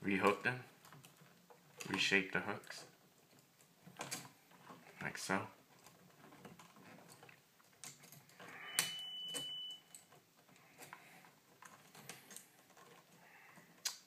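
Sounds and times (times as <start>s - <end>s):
pliers and wire clicking: 5.7s - 14.0s.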